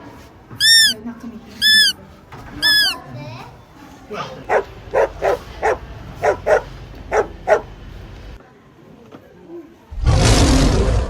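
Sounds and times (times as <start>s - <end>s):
dog barking: 4.5s - 7.7s
large animal roaring: 9.9s - 11.0s.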